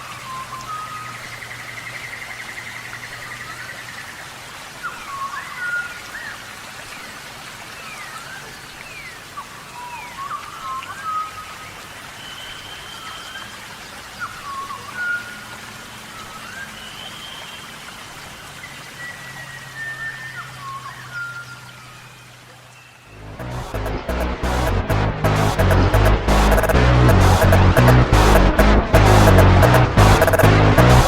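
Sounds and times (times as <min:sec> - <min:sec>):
birds singing whistled phrases: 0:16.2 - 0:17.6.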